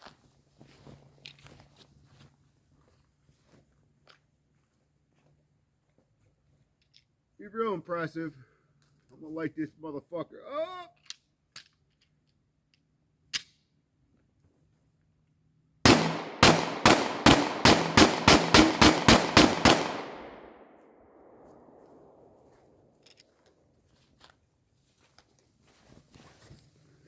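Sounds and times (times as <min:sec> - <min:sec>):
pistol shots: 0:15.8 - 0:22.3.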